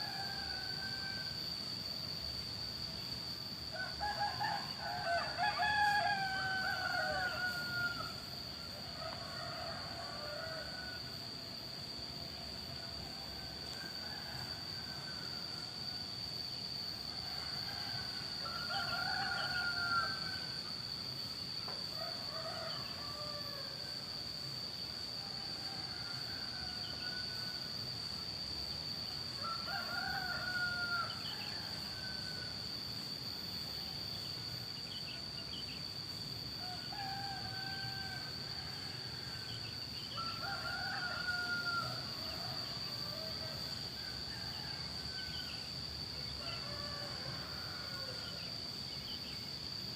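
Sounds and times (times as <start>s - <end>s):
roosters crowing: 3.8s - 11.1s, 17.2s - 20.6s, 25.1s - 27.8s, 29.3s - 32.8s, 36.6s - 45.5s, 46.2s - 48.6s.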